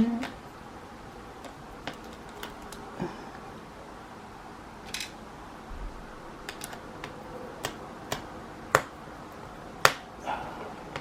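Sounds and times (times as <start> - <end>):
screwdriver clicking on screws: 6.4 - 8.3.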